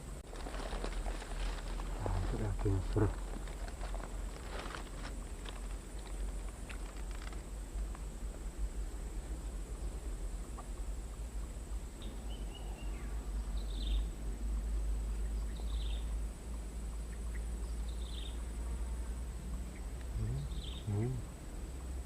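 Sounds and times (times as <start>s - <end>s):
thin insect drone: 0.0s - 22.0s
bird chirping: 11.9s - 18.7s, 19.6s - 21.3s.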